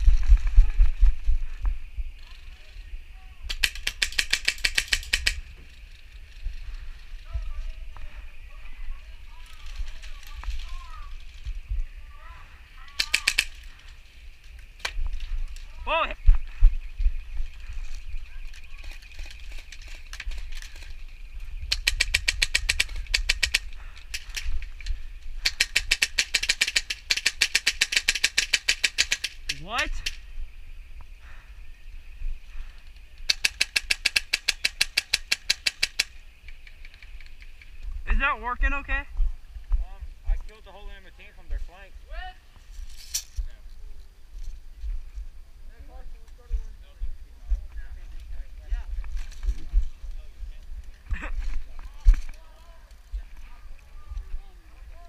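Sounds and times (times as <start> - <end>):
airsoft gun firing: 3.5 - 5.4, 12.9 - 13.7, 25.4 - 30.1, 33.3 - 36.2.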